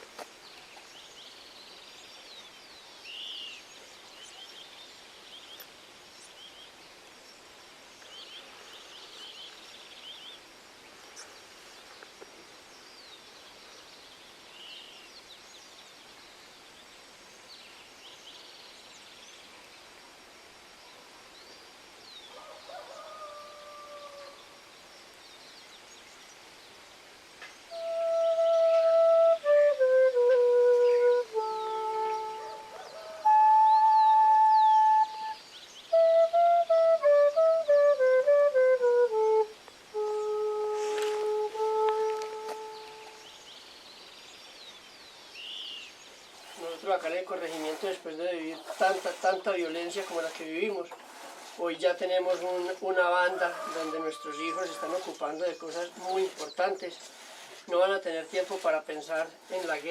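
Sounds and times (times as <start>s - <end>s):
faint steady hiss: 0.0s - 59.9s
birds chirping: 27.4s - 59.9s.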